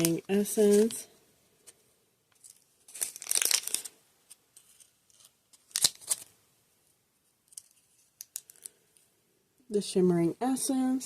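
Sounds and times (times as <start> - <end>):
packet tearing open: 2.4 - 4.0, 4.6 - 6.3, 7.5 - 8.8.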